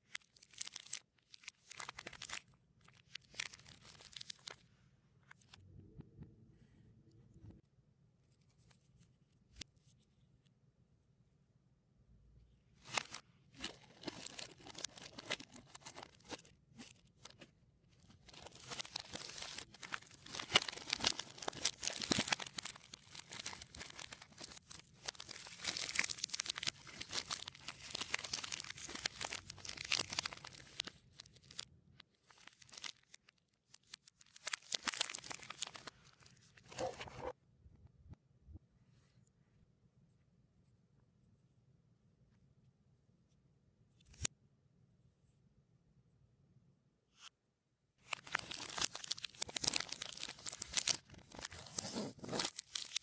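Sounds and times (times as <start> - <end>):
wrappers crinkling in reverse: 18.2 - 31.6, 32.3 - 36.2, 48.1 - 53.0.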